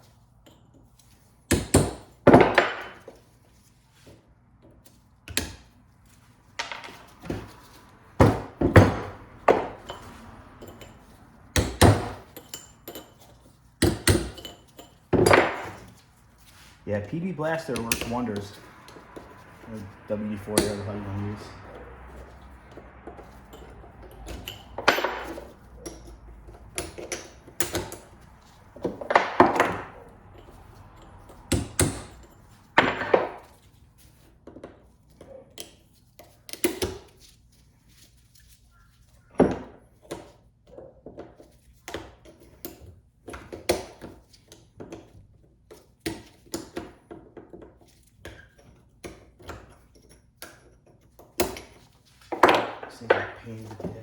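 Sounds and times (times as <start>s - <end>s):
scraping metal knocks: 6.6s - 33.6s.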